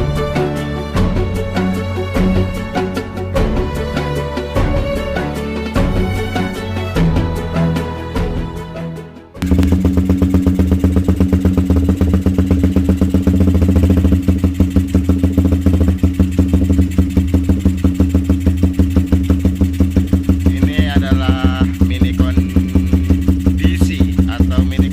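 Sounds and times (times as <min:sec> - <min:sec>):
motorcycle engine idling: 0:09.4 - 0:24.9.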